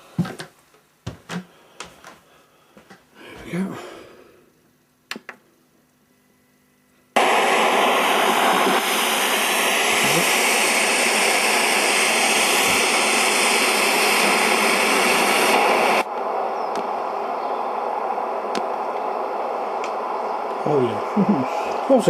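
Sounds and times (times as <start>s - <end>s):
radio static hiss: 7.2s - 22.0s
radio click: 16.1s - 16.9s, 18.5s - 19.1s.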